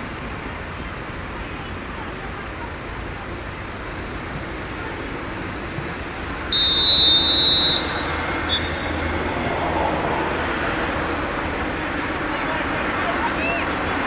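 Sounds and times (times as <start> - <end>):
traffic-like background noise: 0.0 - 14.0
referee's whistle blast: 6.5 - 8.9.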